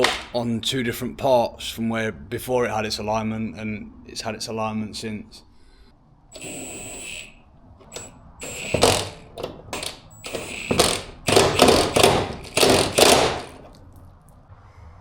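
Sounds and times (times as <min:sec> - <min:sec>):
ratcheting tool strokes: 0:06.4 - 0:13.7.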